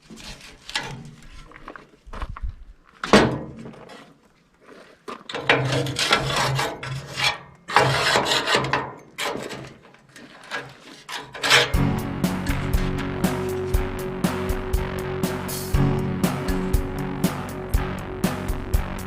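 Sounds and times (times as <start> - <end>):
scraper rasping on metal: 6.0 - 9.4.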